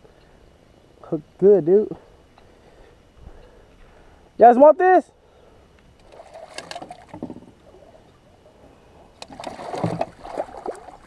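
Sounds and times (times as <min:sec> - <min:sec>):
knocking and scraping on plastic kayak: 0:06.4 - 0:07.7, 0:09.3 - 0:10.5.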